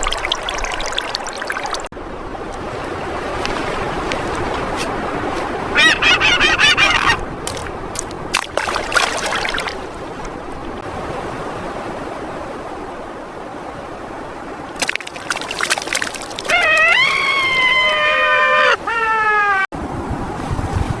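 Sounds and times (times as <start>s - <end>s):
rushing water: 0.0s - 21.0s
bird calling: 4.3s - 7.3s, 16.4s - 19.7s.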